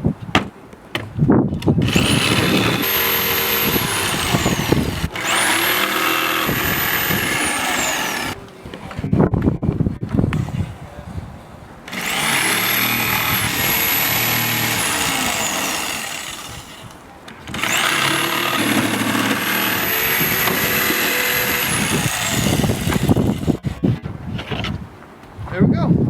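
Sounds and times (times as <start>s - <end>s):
power saw cutting plywood: 1.8s - 8.4s, 11.9s - 23.8s.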